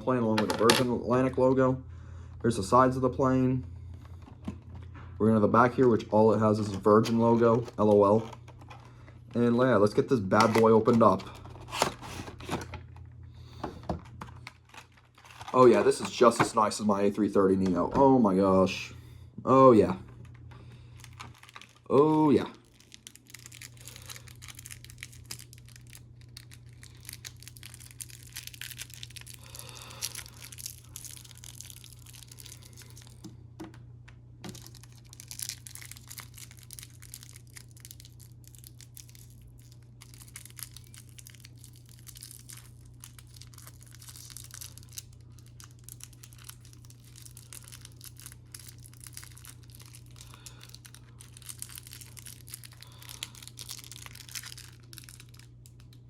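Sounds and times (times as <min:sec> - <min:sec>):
steady low hum: 0:00.0 - 0:56.0
plastic and cardboard rustling: 0:10.3 - 0:16.8, 0:20.1 - 0:29.4.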